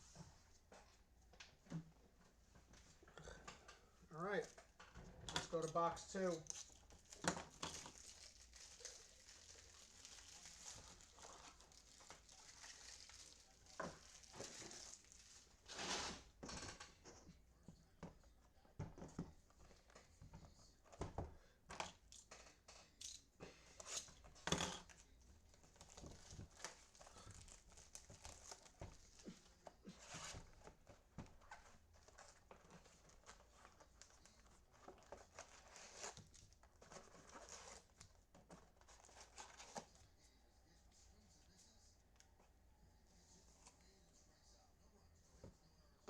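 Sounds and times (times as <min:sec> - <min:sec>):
plastic wrapping crinkling and tearing: 0:06.4 - 0:16.1, 0:23.9 - 0:29.3, 0:31.4 - 0:39.9.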